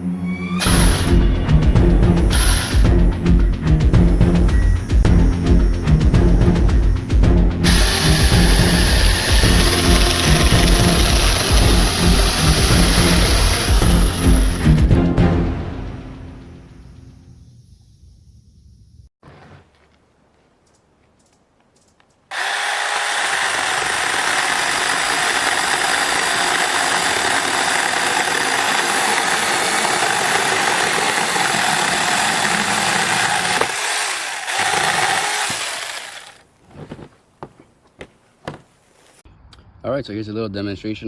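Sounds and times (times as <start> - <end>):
mini chainsaw running: 0.6 - 1.4, 2.2 - 3.1, 7.6 - 14.8, 22.3 - 36.4.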